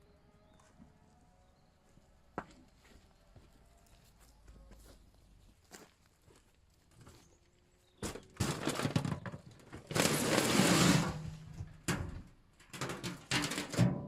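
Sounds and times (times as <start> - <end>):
sharp knocks and clattering: 8.0 - 14.0.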